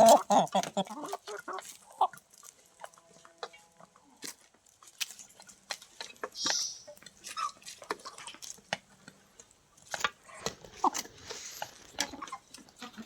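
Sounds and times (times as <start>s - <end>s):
chicken calls: 0.0s - 2.2s, 6.0s - 8.4s, 10.2s - 13.0s
chickens pecking with taps: 0.0s - 13.0s.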